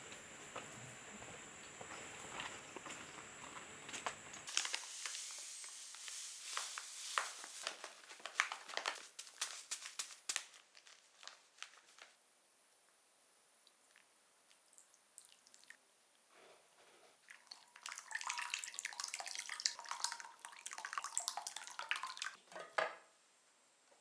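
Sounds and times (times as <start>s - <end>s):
crinkling and crackling clicks: 5.9s - 12.2s
low background noise: 6.5s - 24.0s.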